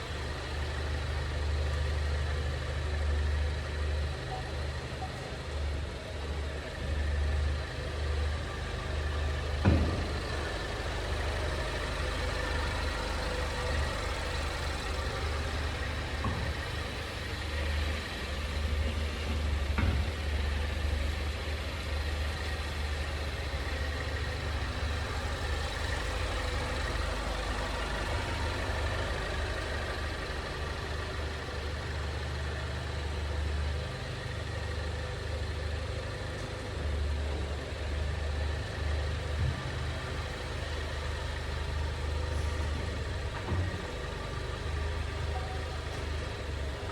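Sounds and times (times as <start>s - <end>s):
car cabin drone: 8.6s - 32.9s
knocks from car chassis: 9.6s - 10.8s, 13.8s - 17.9s.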